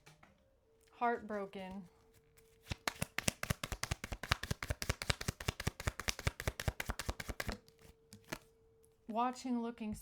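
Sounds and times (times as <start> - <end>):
cards being shuffled: 1.3 - 8.5.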